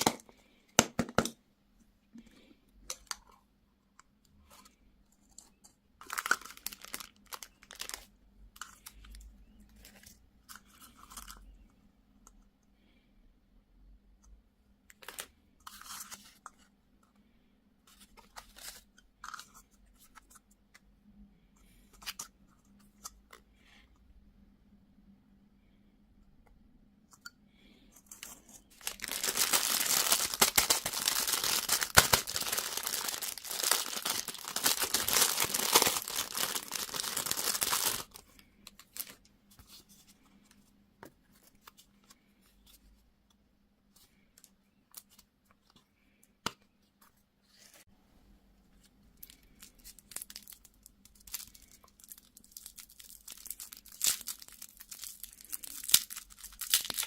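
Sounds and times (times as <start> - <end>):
wrapper tearing and crinkling: 6.0 - 8.1, 28.8 - 38.2, 49.2 - 57.0.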